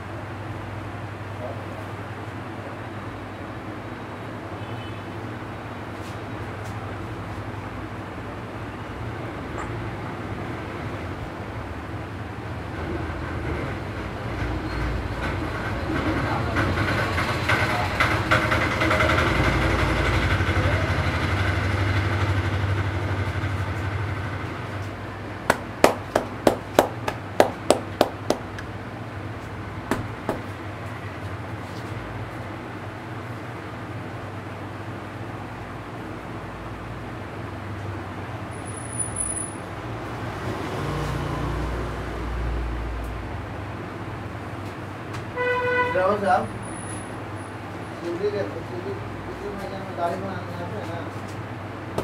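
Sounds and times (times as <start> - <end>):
sharp hand slaps: 25.5 - 28.7
vehicle passing: 39.8 - 43.7.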